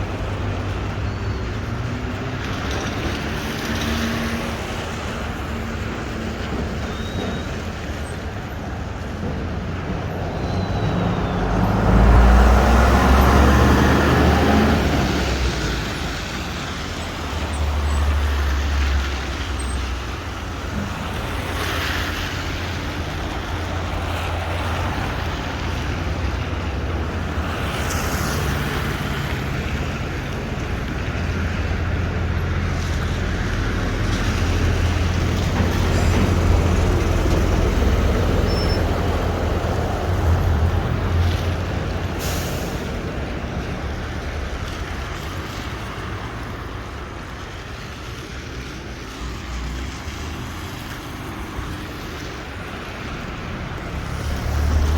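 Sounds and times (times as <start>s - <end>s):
tyres hissing on wet road: 0.0s - 54.9s
vehicle passing close: 10.2s - 19.5s, 48.4s - 54.9s.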